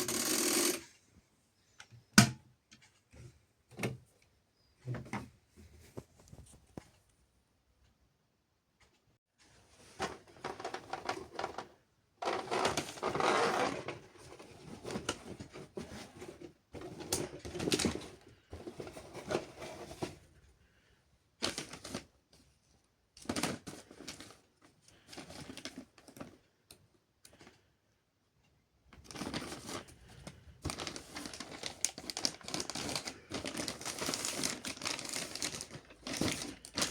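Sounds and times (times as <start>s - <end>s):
toy washing machines clicking: 0.0s - 1.0s.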